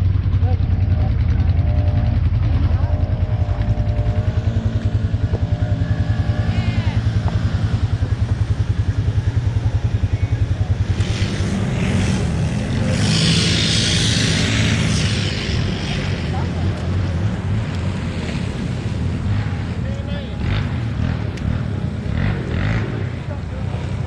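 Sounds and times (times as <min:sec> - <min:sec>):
atv engine thumping: 0:00.0 - 0:10.5.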